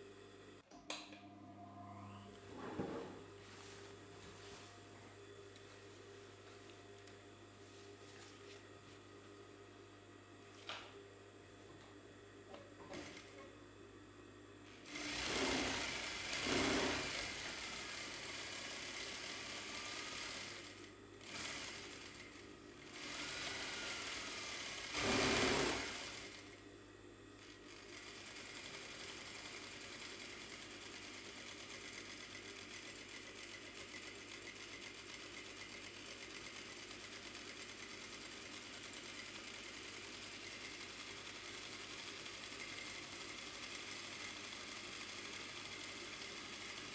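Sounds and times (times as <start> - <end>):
industrial sewing machine stitching: 12.9 - 13.4, 14.8 - 26.6, 27.6 - 46.9.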